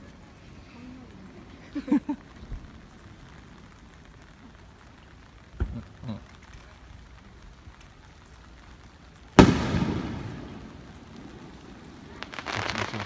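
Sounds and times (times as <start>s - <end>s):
firework bang with rumbling echo: 9.4s - 13.0s.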